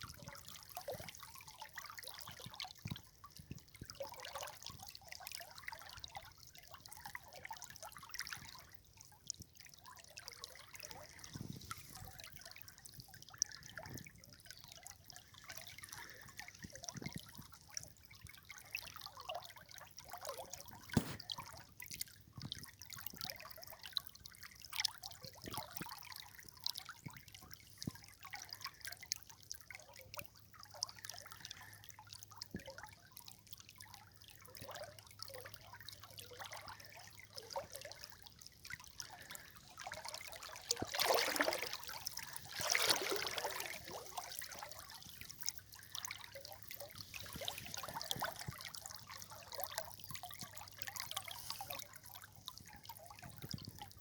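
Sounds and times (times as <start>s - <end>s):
river water trickling: 0.0s - 54.0s
small splashes: 34.6s - 51.9s
water gushes: 39.0s - 48.5s.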